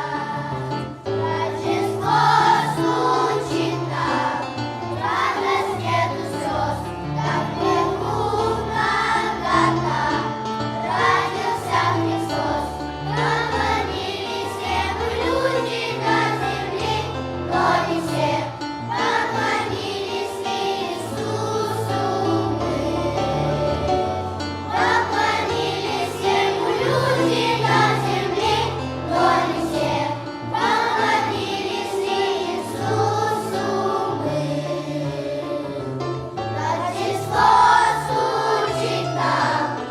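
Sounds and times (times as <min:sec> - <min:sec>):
children's choir singing: 0:00.0 - 0:39.9
instrumental accompaniment with bass: 0:20.6 - 0:35.4.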